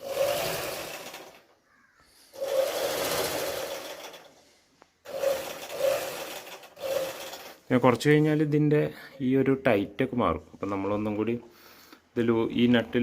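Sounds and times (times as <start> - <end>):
sewing machine motor running: 0.0 - 1.5, 2.3 - 4.4, 5.1 - 7.6.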